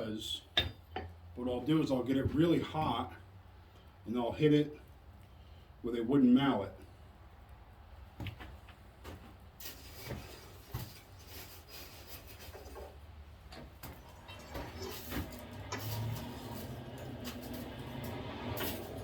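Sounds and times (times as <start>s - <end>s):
coke raked in a forge: 9.6s - 19.0s
low hum: 14.0s - 19.0s.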